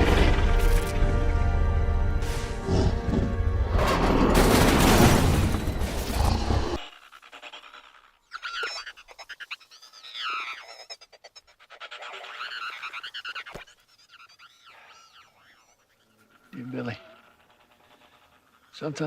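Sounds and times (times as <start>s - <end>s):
loud film score: 0.0s - 6.8s
jungle ambience: 0.0s - 19.0s
warbling animal calls: 5.9s - 19.0s.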